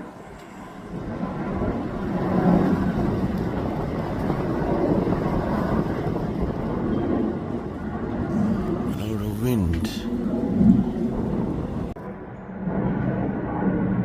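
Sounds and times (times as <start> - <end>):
wind buffeting microphone: 0.8 - 8.9.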